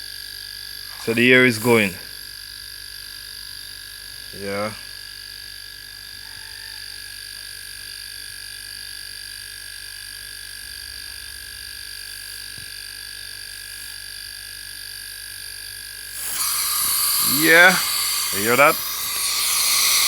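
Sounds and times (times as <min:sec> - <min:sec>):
air compressor running: 0:16.1 - 0:20.0
compressor whine: 0:16.1 - 0:20.0.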